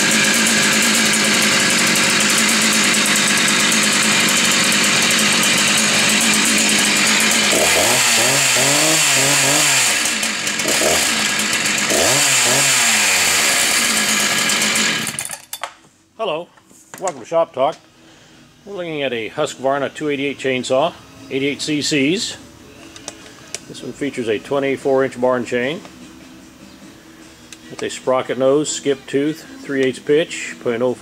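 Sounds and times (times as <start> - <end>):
chainsaw running at high revs: 0.0 - 15.4.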